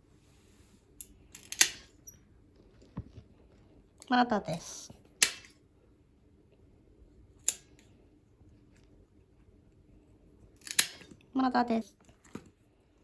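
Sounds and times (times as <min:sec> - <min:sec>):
nail clippers snipping claws: 0:01.4 - 0:01.9, 0:05.2 - 0:05.6, 0:07.4 - 0:07.8, 0:10.6 - 0:11.1.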